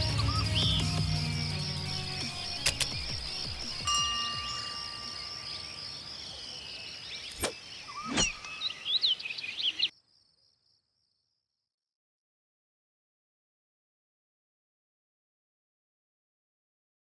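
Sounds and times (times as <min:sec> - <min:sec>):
bird chirps: 0:00.0 - 0:10.3
pulsing insect drone: 0:00.4 - 0:08.8
sharp clicks: 0:02.3 - 0:03.8
chime ringing: 0:03.8 - 0:05.8.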